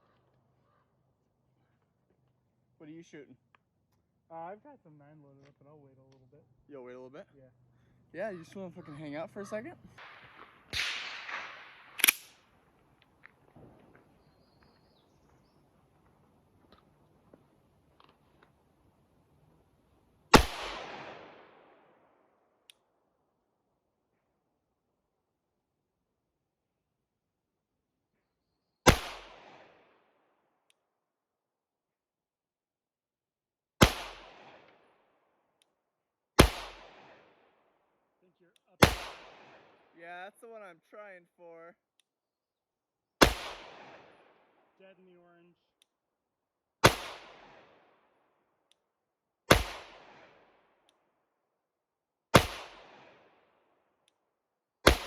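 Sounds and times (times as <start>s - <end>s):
gunshots with echo: 9.9s - 12.4s, 20.3s - 21.8s, 28.9s - 29.9s, 33.8s - 34.7s, 36.4s - 37.4s, 38.8s - 39.9s, 43.2s - 44.4s, 46.8s - 47.8s, 49.5s - 50.4s, 52.4s - 53.3s.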